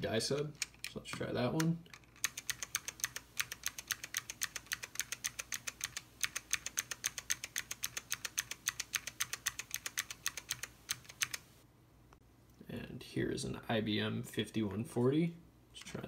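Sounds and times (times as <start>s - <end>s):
mechanical keyboard typing: 0.4s - 11.5s.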